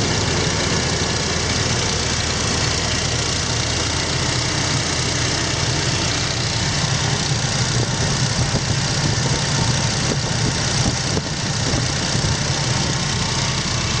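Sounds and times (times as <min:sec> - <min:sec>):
car engine running: 0:00.0 - 0:14.0
rapid even engine knock: 0:00.0 - 0:14.0.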